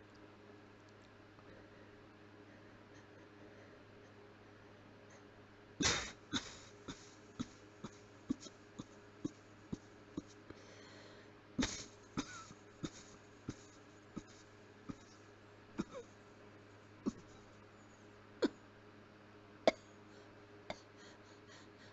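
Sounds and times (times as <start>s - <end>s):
person coughing: 5.8s - 9.4s, 11.6s - 15.1s, 15.8s - 16.1s.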